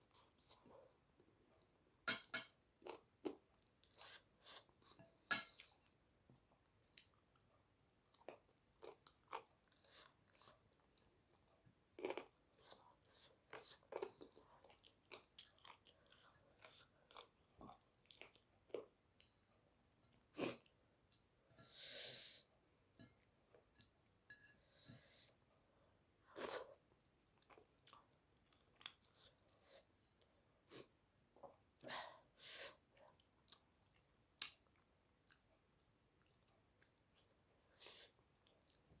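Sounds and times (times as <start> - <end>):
chewing food: 5.6 - 19.4, 26.6 - 30.4, 33.0 - 39.0.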